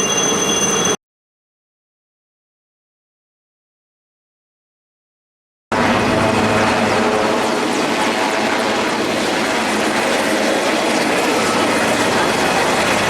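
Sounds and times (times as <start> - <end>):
helicopter rotor and engine: 5.7 - 13.0.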